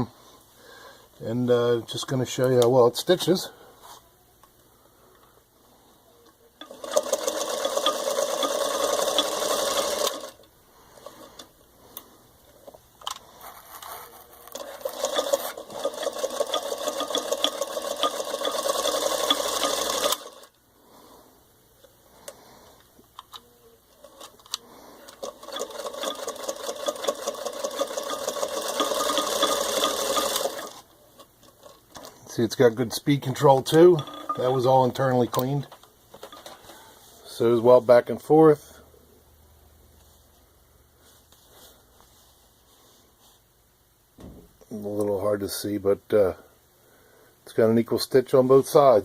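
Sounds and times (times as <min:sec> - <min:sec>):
sewing machine stitching: 0:06.6 - 0:10.4, 0:14.5 - 0:20.6, 0:25.0 - 0:30.9, 0:33.5 - 0:34.7.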